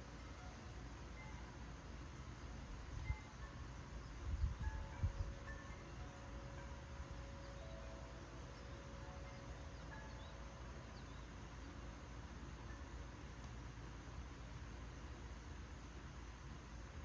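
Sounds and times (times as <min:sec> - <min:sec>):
wind rumbling on microphone: 0:02.8 - 0:06.0.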